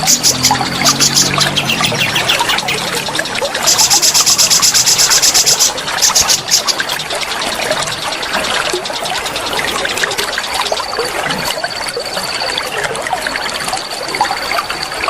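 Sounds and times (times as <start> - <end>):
songbird singing high notes: 0.0 - 6.9
waterfall running: 0.0 - 15.0.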